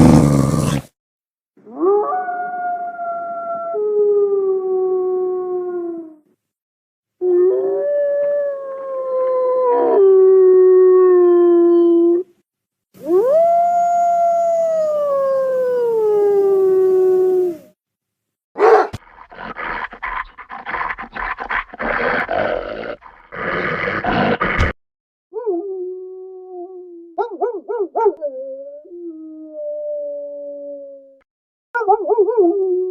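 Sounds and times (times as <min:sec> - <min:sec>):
wolf howling: 0:01.7 - 0:06.1, 0:07.2 - 0:12.2.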